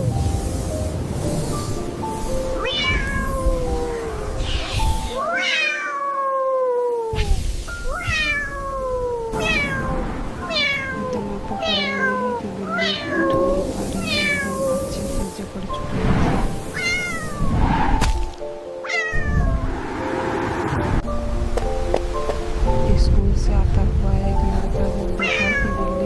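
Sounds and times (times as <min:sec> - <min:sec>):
background music: 0:00.0 - 0:26.0
cat meowing: 0:02.6 - 0:15.4, 0:16.7 - 0:17.6, 0:18.8 - 0:19.6, 0:25.2 - 0:26.0.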